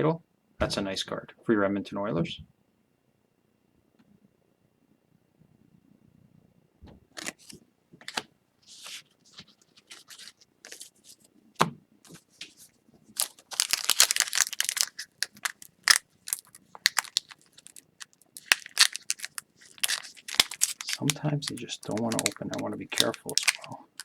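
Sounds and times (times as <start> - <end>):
foil wrapper crinkling and tearing: 7.2 - 11.0, 12.1 - 24.0.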